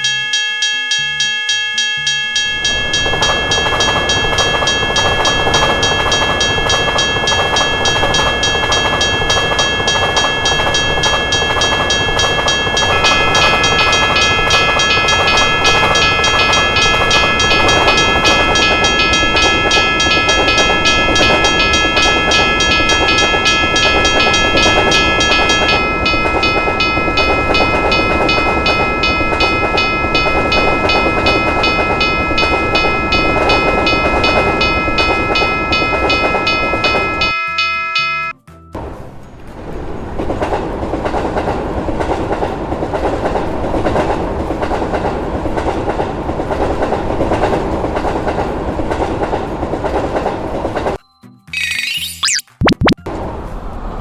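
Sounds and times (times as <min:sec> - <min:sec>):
railroad crossing bell ringing: 0:00.0 - 0:38.7
train wheels clattering on rails: 0:02.4 - 0:37.6, 0:39.4 - 0:51.0.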